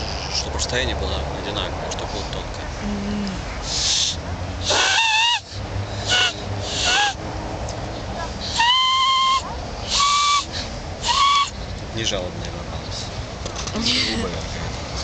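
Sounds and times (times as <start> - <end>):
grass-blade whistle squawking: 3.8 - 5.5, 6.1 - 7.2, 8.5 - 11.6.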